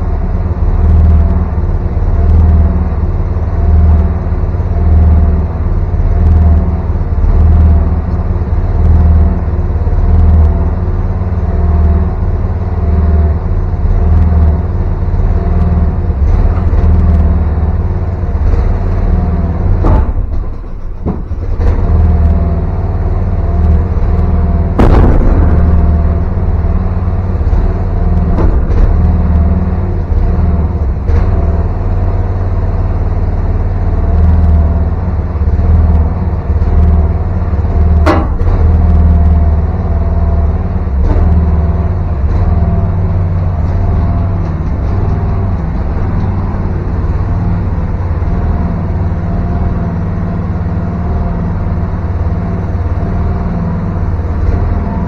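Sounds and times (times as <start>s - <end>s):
excavator engine running: 0.0s - 55.0s
sharp knocks: 18.7s - 22.6s, 24.7s - 31.6s, 38.0s - 39.2s.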